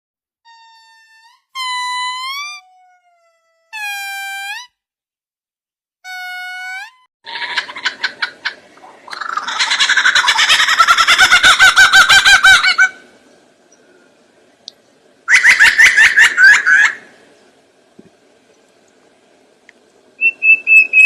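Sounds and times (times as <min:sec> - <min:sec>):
bird stuttering call: 0:07.3 - 0:13.0.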